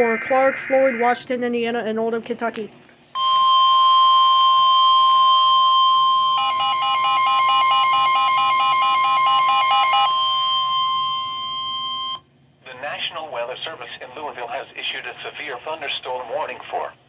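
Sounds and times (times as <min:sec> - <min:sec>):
rapidly pulsing alert tone: 0:00.0 - 0:01.3
steady alert tone: 0:00.0 - 0:01.3.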